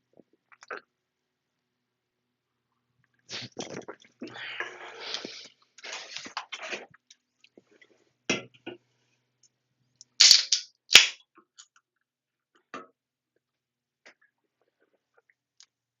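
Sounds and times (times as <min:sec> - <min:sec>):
low gulp: 0:03.3 - 0:05.5.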